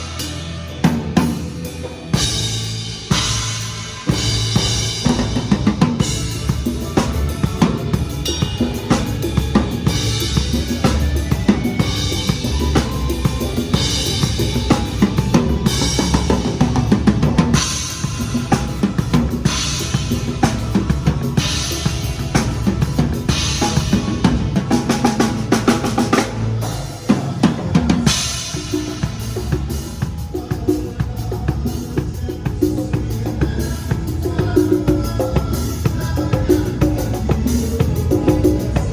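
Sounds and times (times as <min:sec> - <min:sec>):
low bass line: 0:00.0 - 0:28.3
drum kit playing a groove: 0:00.0 - 0:38.9.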